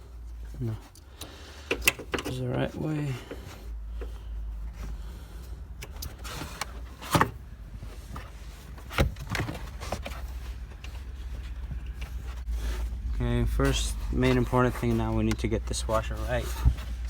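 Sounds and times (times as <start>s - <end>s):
steady low rumble: 2.3s - 9.6s, 10.2s - 17.0s.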